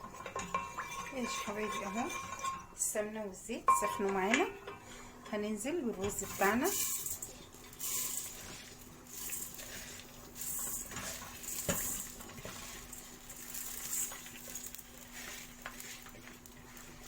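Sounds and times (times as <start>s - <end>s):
spoon scraping a pot: 0.0s - 2.9s, 3.7s - 17.0s
rice sizzling in oil: 3.7s - 17.0s.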